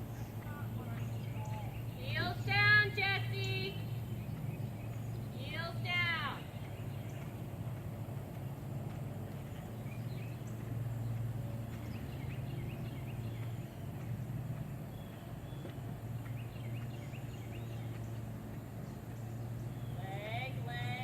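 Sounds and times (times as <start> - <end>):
birds chirping: 0.0 - 21.0.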